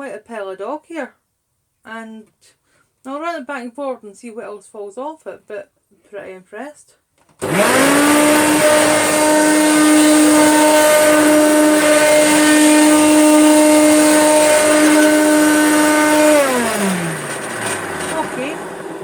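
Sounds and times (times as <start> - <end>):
vacuum cleaner motor whine: 7.4 - 19.0.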